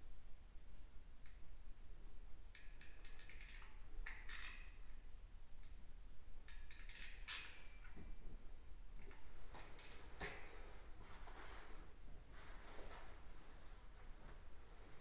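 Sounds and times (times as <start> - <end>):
clicks and scrapes of small tools: 2.6 - 4.8, 6.5 - 8.0, 9.0 - 10.5.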